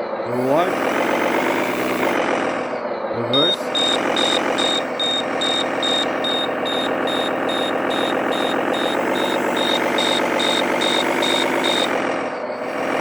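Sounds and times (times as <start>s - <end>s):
simulated truck engine: 0.0s - 13.0s
high back-up warning beep: 3.2s - 12.0s.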